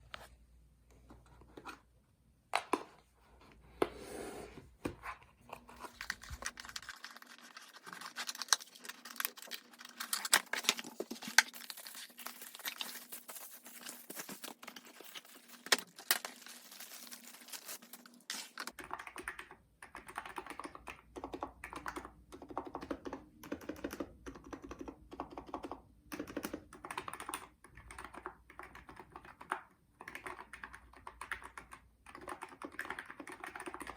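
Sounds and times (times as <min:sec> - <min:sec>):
keyboard typing: 0:18.7 - 0:33.9.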